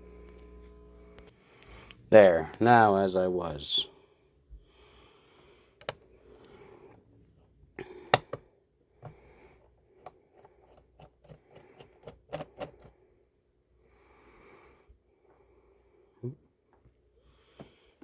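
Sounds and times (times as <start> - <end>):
screwdriver tapping plastic case: 8.2 - 8.4, 11.0 - 12.9.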